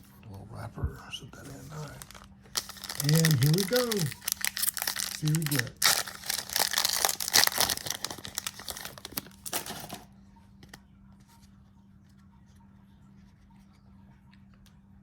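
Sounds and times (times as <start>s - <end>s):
wrapper tearing and crinkling: 1.7s - 10.0s.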